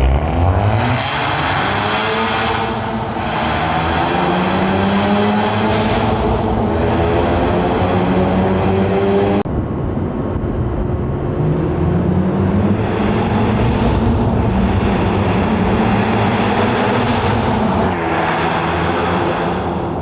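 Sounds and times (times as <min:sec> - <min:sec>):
road and wind noise: 0:00.0 - 0:20.0
car engine running: 0:15.7 - 0:18.4.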